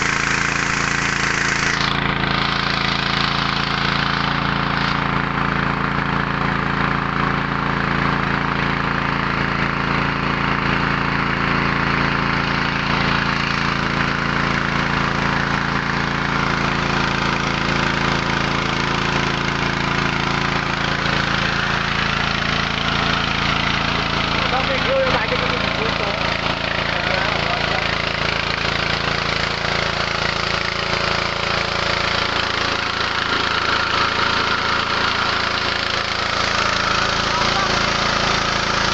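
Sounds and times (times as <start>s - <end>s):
small petrol engine running: 0.0s - 38.9s.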